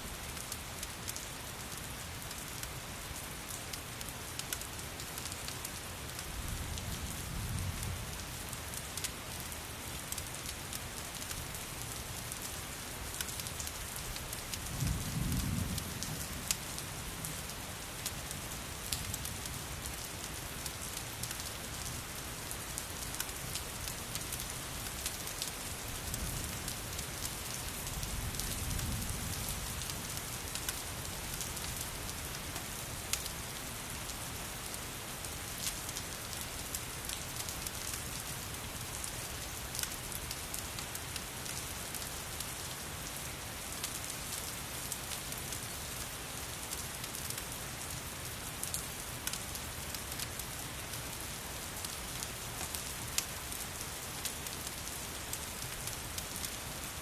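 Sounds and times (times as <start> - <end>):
steady rain falling: 0.0 - 57.0
crackling fireplace: 17.4 - 57.0.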